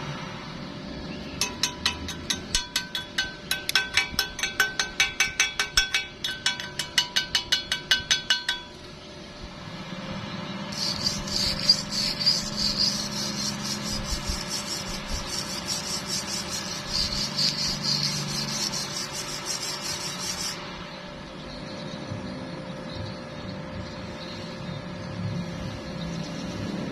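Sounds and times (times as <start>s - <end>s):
hammer blows on metal: 1.4s - 8.8s, 10.8s - 20.6s.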